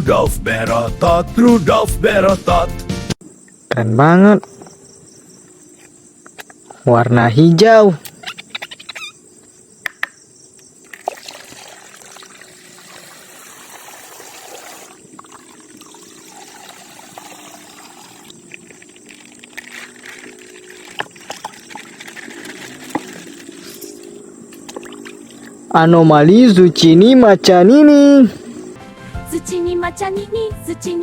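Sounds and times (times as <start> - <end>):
water trickling and pouring: 10.8 - 25.7.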